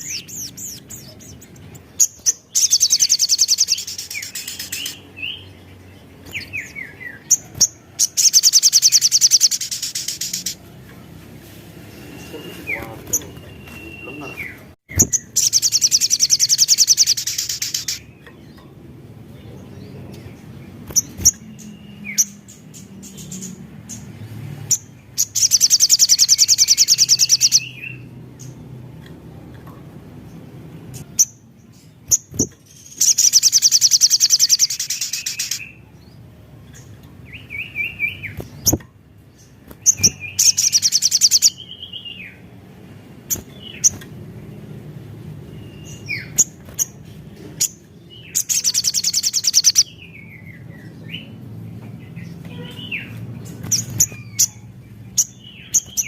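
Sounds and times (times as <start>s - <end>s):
bird chirps and ticks: 0.0s - 5.1s, 5.7s - 11.0s, 12.3s - 18.8s, 24.7s - 35.6s, 38.0s - 41.7s, 45.8s - 51.0s
songbird trilling: 0.0s - 10.6s, 12.1s - 18.7s, 24.7s - 28.6s, 30.9s - 35.8s, 39.4s - 42.4s, 47.6s - 51.4s, 52.2s - 56.0s.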